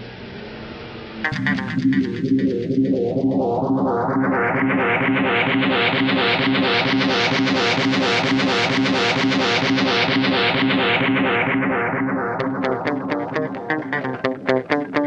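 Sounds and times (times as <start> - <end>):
guitar playing repeated notes: 1.2 - 3.6, 6.1 - 15.0.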